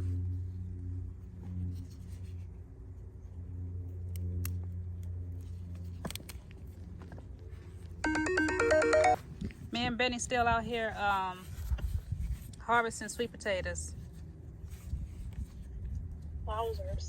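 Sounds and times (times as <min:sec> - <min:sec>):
mobile phone ringtone: 0:08.0 - 0:09.2.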